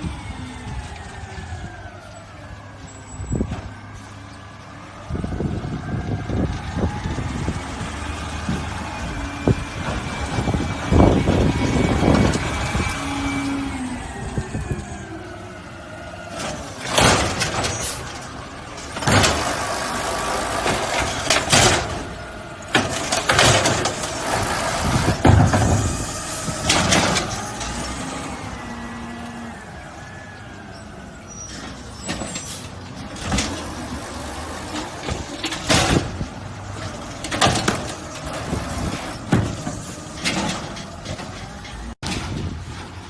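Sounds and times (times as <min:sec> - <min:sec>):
garbage truck running: 0:00.0 - 0:43.0.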